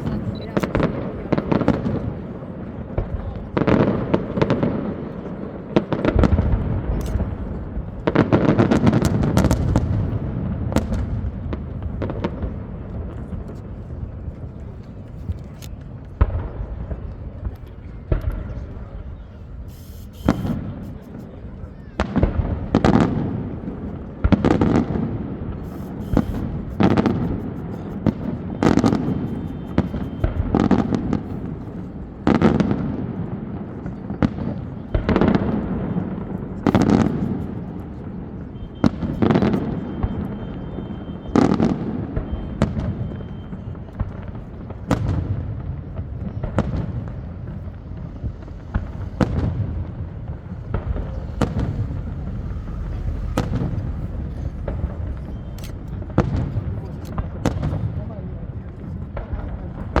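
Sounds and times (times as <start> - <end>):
fireworks bursting with echo: 0.0 - 60.0.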